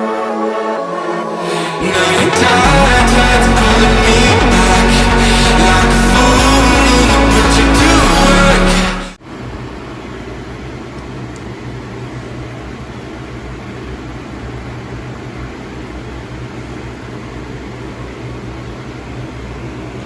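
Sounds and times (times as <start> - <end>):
steady low hum: 0.8 - 20.0.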